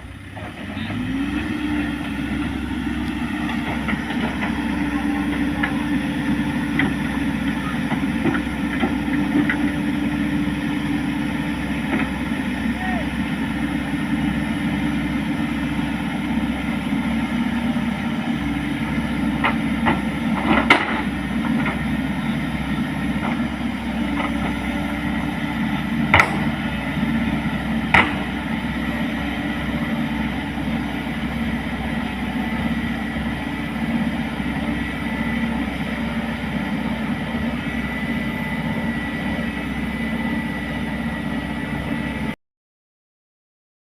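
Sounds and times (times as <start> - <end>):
excavator engine running: 0.0 - 42.4
sharp metallic knocks: 26.1 - 26.6.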